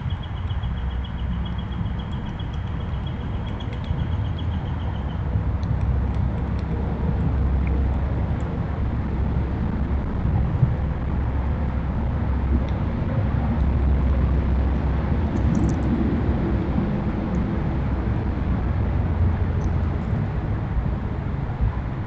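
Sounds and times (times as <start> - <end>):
faint high bird chirps: 0.0 - 5.2
low rumble of road traffic: 0.0 - 22.0.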